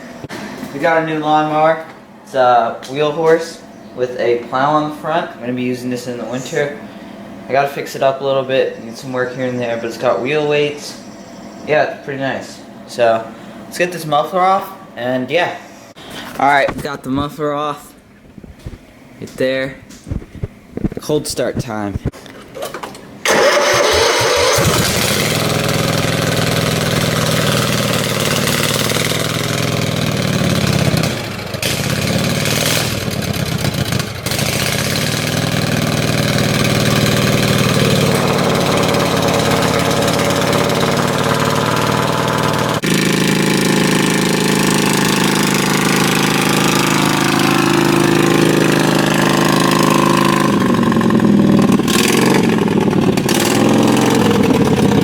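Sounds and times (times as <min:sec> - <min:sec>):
lawn tractor engine running loud: 0:23.2 - 0:55.0.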